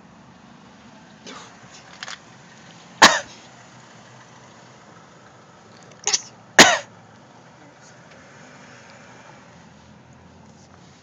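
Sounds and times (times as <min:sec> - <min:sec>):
breathy coughing puffs: 0:03.0 - 0:03.4, 0:06.1 - 0:06.9.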